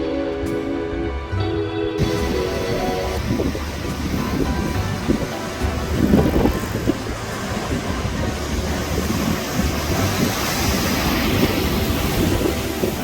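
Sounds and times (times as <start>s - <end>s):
low rumble and hiss: 0.0s - 13.0s
wind buffeting microphone: 0.0s - 13.0s.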